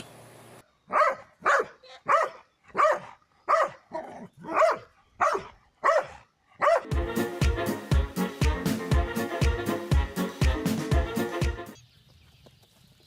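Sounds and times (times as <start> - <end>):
dog barking: 0.9 - 6.9.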